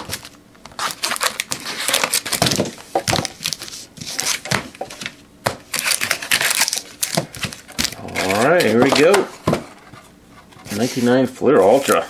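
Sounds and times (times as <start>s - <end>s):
card packs crinkling: 0.0s - 9.3s.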